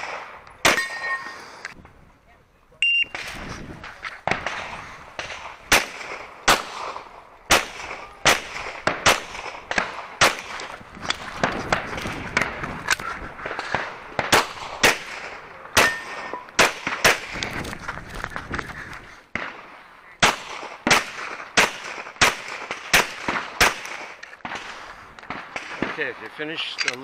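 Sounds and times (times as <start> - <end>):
pistol shots echoing: 0.0 - 1.2, 4.2 - 12.6, 13.4 - 17.4, 19.4 - 26.3.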